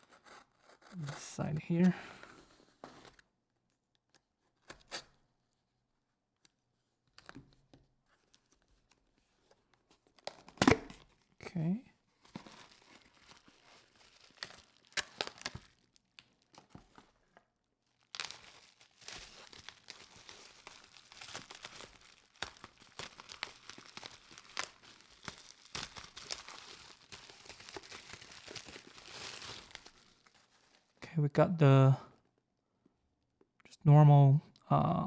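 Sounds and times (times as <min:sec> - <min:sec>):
packaging crinkling and tearing: 0:12.1 - 0:31.0
cardboard handling: 0:12.2 - 0:17.5, 0:18.2 - 0:30.7.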